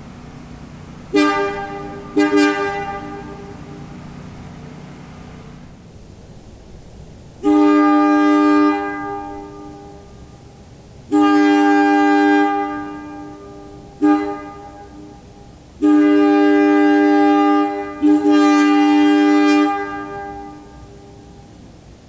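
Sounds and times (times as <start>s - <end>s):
two-chime air horn: 1.1s - 4.0s.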